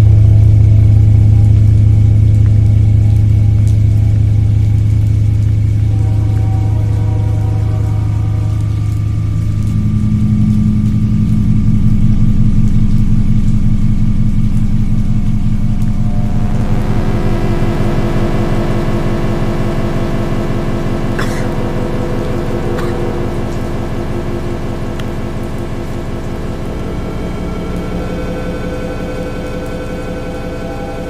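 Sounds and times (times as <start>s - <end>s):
low droning hum: 0.0s - 31.0s.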